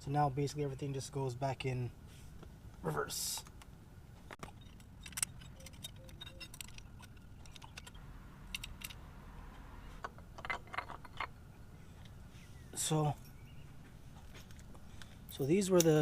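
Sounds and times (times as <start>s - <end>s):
low steady hum: 0.0s - 16.0s
metal parts clinking: 4.4s - 9.0s, 10.1s - 11.3s.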